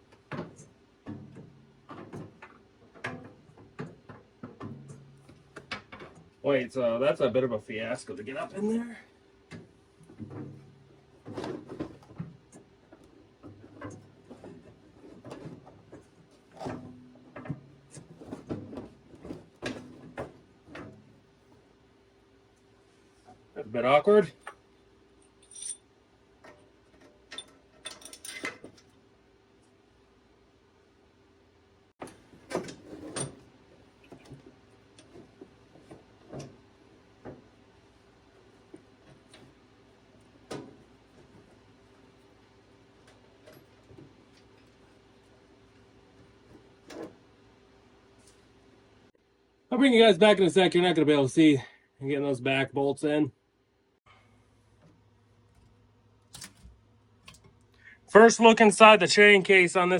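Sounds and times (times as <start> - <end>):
faint steady hum: 0.0 - 59.9
metal parts and tools clattering: 25.3 - 28.9
metal parts clunking and scraping: 25.3 - 28.9, 32.0 - 37.6.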